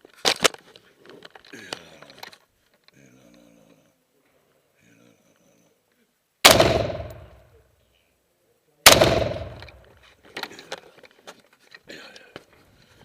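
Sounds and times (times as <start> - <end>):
rifle shots with echo: 6.4 - 7.4, 8.8 - 9.9.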